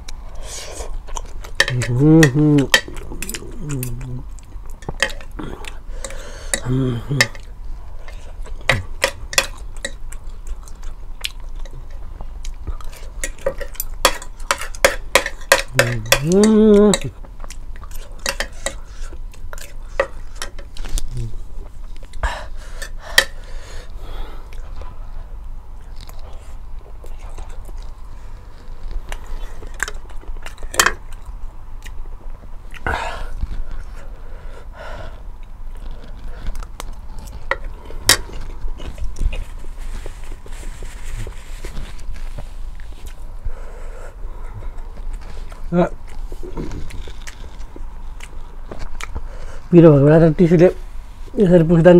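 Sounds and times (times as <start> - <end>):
chewing: 0.0 - 22.2, 24.4 - 34.2, 35.1 - 43.6, 44.3 - 49.7
utensils clicking against a bowl: 13.2 - 17.2, 18.2 - 18.8.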